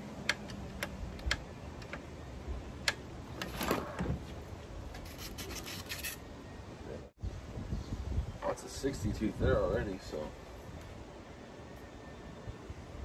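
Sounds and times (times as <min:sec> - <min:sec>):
sharp clicks: 0:00.2 - 0:02.1
rubbing and scraping: 0:03.4 - 0:06.2.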